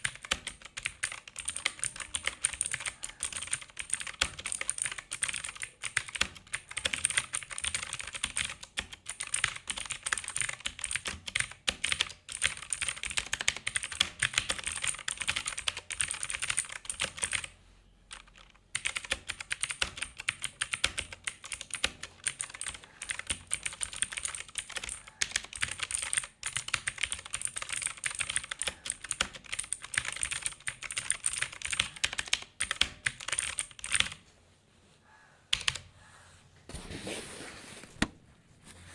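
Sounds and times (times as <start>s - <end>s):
mechanical keyboard typing clicks: 0.0s - 17.5s, 18.1s - 34.2s.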